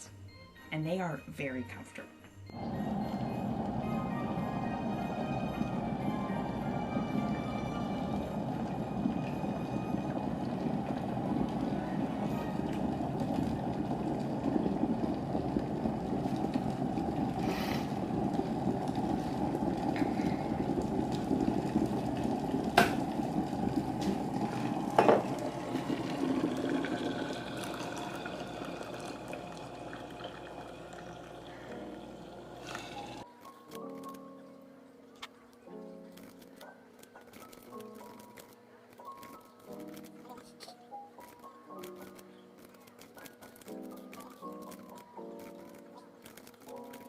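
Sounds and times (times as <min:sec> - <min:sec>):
kettle heating water: 0:02.5 - 0:33.3.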